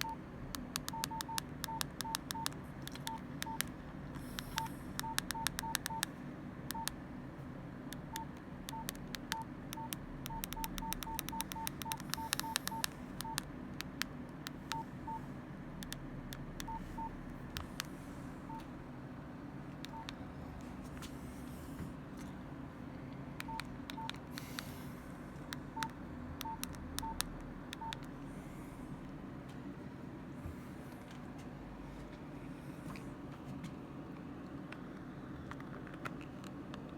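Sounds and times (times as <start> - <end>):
key clicks: 0.0 - 6.1, 7.9 - 14.8, 23.4 - 24.7
phone keypad beeps: 0.0 - 6.1, 6.7 - 7.0, 8.0 - 15.2, 15.8 - 17.8, 19.9 - 20.2, 23.4 - 24.2, 25.7 - 28.1
steady low hum: 0.0 - 36.9.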